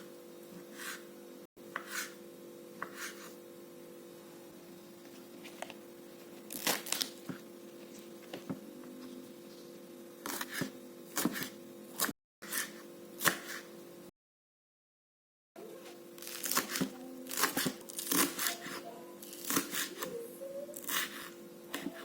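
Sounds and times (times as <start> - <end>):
steady low hum: 0.0 - 12.1.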